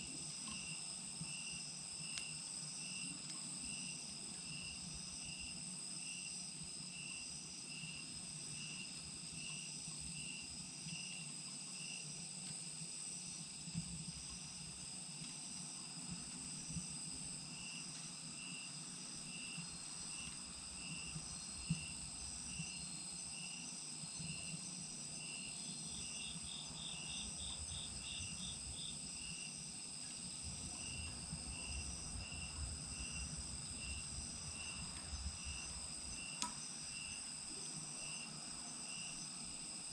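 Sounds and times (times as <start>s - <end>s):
crickets and insects calling: 16.8s - 39.9s.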